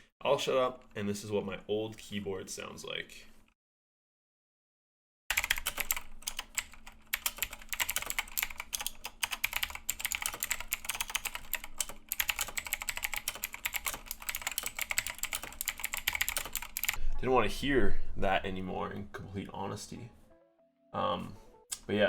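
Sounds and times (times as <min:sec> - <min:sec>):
fast mechanical keyboard typing: 0:05.3 - 0:17.0.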